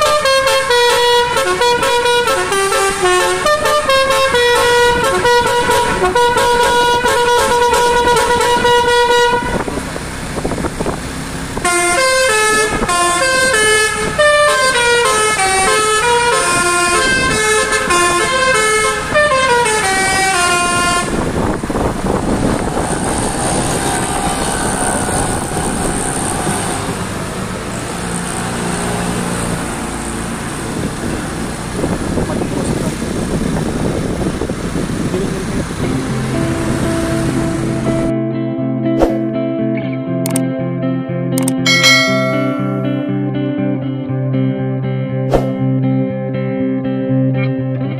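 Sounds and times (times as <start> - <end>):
musical car horn: 0.0 - 9.9, 11.6 - 27.1, 41.7 - 43.2
steady noisy rumble: 3.4 - 14.2, 16.0 - 28.4, 29.4 - 38.1
faint held tone: 41.7 - 43.2.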